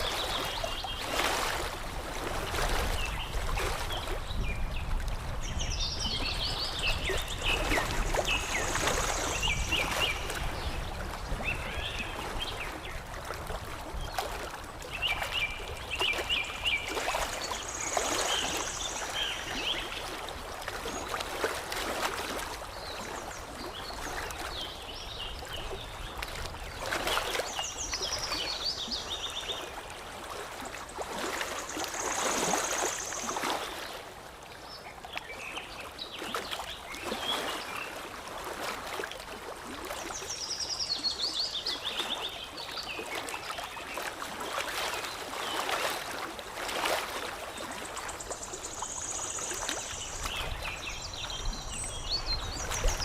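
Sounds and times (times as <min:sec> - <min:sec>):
water lapping and trickling: 0:00.0 - 0:53.0
songbirds chirping and trilling: 0:47.7 - 0:53.0.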